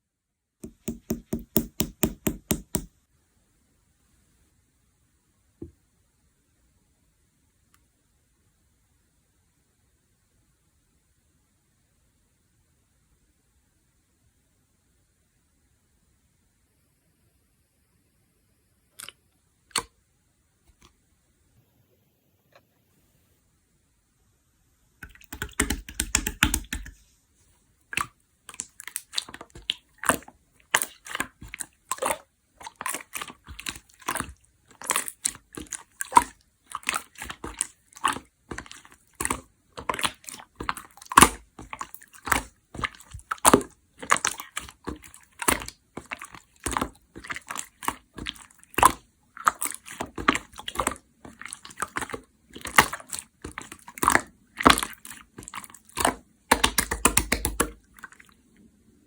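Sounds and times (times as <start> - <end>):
slime squishing with sticky pops: 0.6 - 2.9, 25.0 - 27.0, 27.9 - 58.3.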